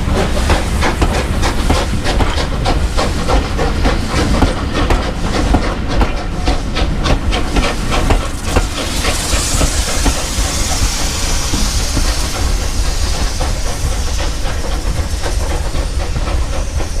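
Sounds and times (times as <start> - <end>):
steam hissing: 0.0 - 17.0
steam locomotive chuffing: 0.0 - 17.0
low rumble: 9.5 - 14.0.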